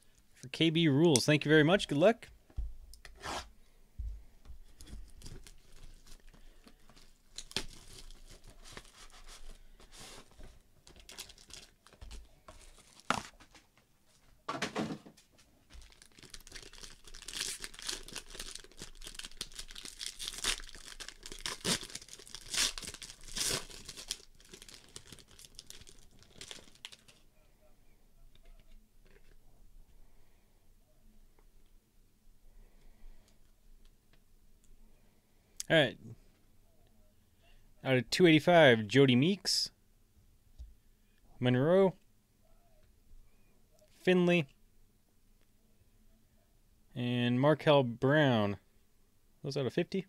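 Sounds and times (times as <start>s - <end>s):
plastic wrapping tearing and crinkling: 4.8s - 13.4s, 15.7s - 27.2s.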